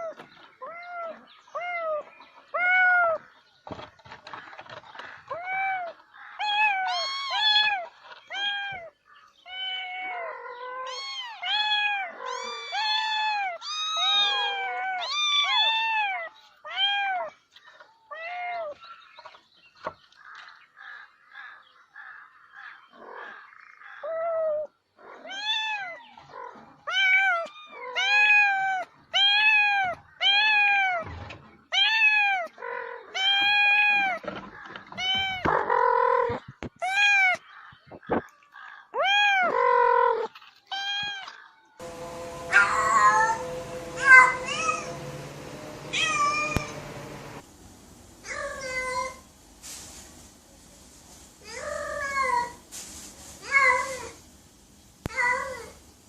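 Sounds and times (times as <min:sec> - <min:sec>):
cats meowing: 0:05.2 - 0:17.3, 0:25.2 - 0:31.1, 0:31.7 - 0:34.2, 0:34.8 - 0:37.4, 0:39.0 - 0:47.4.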